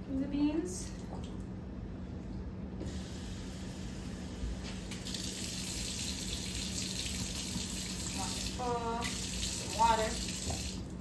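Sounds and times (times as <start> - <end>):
tap running into a sink: 10.3 - 10.8.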